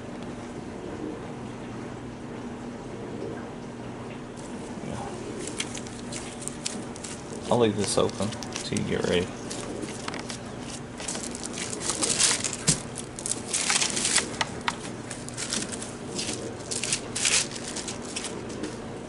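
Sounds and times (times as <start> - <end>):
plastic crinkling and rustling: 4.4 - 19.0.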